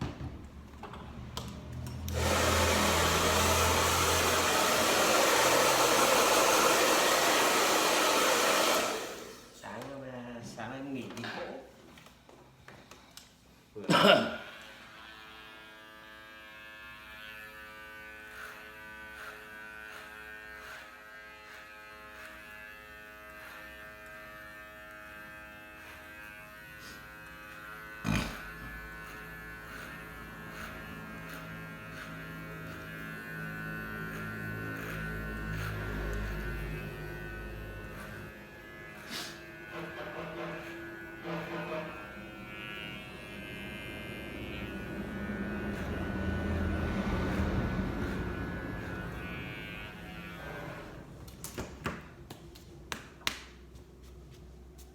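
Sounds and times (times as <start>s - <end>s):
hair clipper buzzing: 1.1s - 9.5s, 14.3s - 51.8s.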